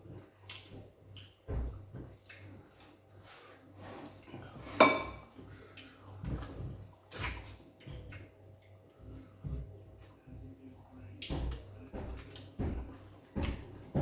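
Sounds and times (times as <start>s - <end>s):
dishes and utensils clinking: 4.6s - 5.4s.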